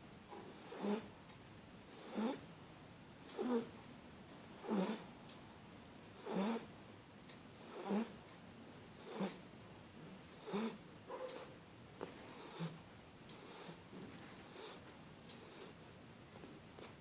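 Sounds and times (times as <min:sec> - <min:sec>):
puppy snoring: 0:00.3 - 0:01.1, 0:01.9 - 0:02.5, 0:03.2 - 0:03.8, 0:04.5 - 0:05.1, 0:06.2 - 0:06.7, 0:07.6 - 0:08.2, 0:09.0 - 0:09.4, 0:10.3 - 0:11.5, 0:12.2 - 0:15.8.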